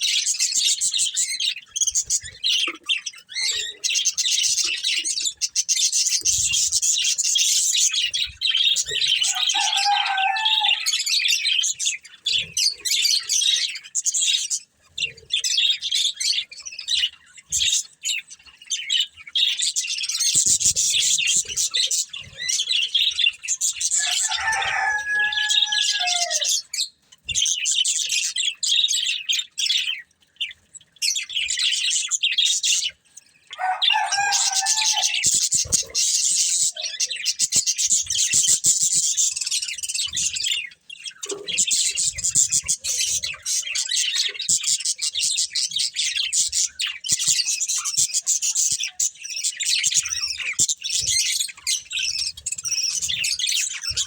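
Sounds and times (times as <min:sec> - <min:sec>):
budgerigars chattering: 0:33.5 - 0:54.0.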